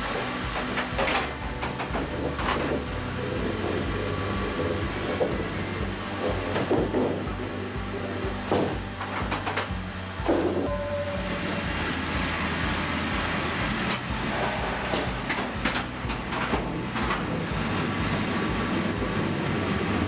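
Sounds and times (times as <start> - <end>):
metal clanks and knocks: 0.0 - 7.5
heavy machinery engine running: 0.0 - 20.0.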